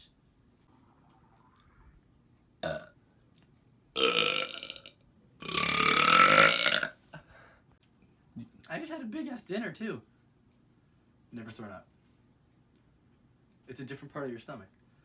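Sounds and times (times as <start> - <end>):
man burping: 2.6 - 2.9, 4.0 - 7.0.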